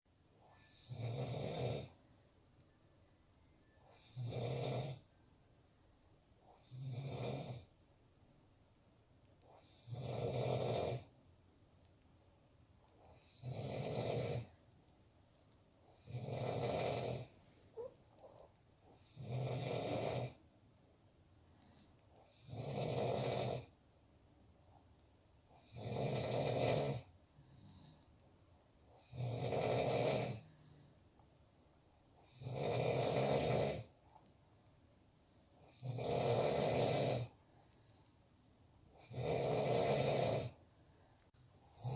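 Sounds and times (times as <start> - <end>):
quiet breathing: 0.2 - 7.9, 9.1 - 11.2, 12.3 - 23.8, 24.6 - 41.9
man snoring: 0.5 - 2.0, 3.9 - 5.1, 6.5 - 7.7, 9.6 - 11.1, 13.1 - 14.6, 15.9 - 18.4, 19.0 - 20.4, 22.2 - 23.7, 25.6 - 28.0, 29.0 - 30.5, 32.2 - 33.9, 35.6 - 37.4, 39.0 - 40.6, 41.7 - 41.9.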